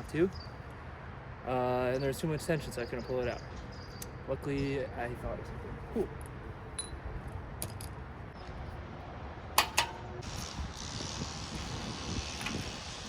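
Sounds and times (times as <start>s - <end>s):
metal parts clinking: 7.6s - 8.0s.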